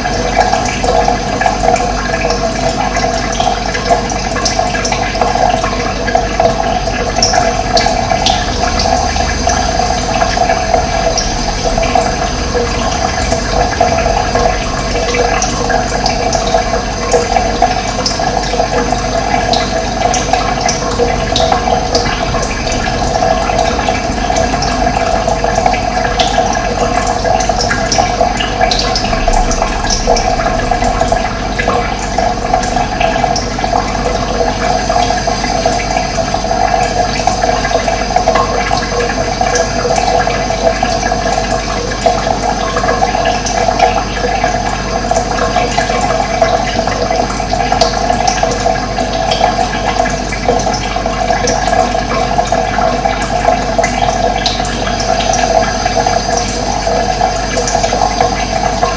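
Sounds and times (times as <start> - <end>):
running water splashing: 0.0 - 58.9.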